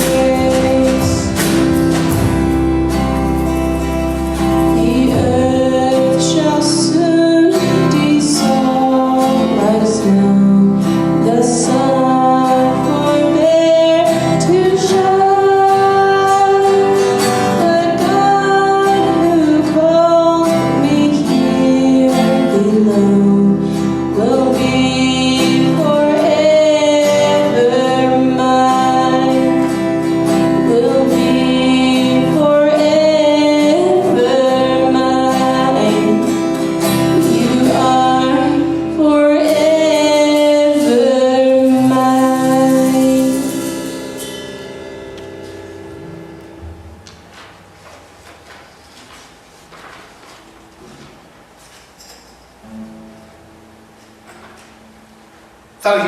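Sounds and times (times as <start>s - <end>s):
person singing: 0.0s - 44.2s
guitar accompaniment: 0.0s - 56.0s.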